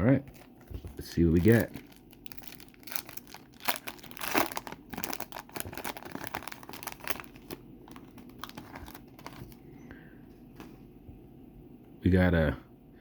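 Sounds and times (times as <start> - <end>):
wrapper crinkling and tearing: 0.3 - 9.6.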